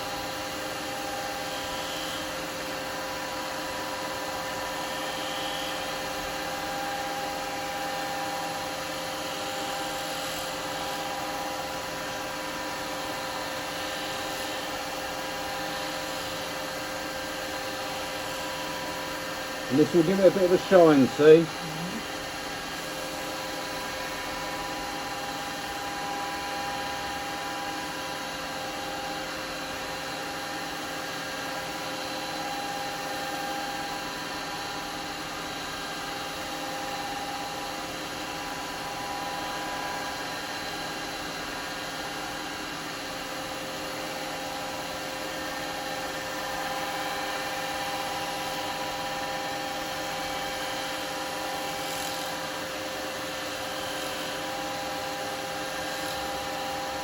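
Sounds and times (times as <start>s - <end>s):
wood lathe humming: 17.8s - 21.6s.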